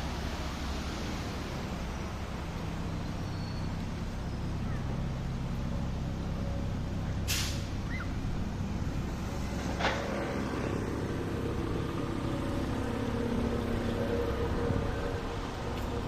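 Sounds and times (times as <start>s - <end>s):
vehicle engines running: 0.0s - 16.0s
short hiss: 7.3s - 7.7s.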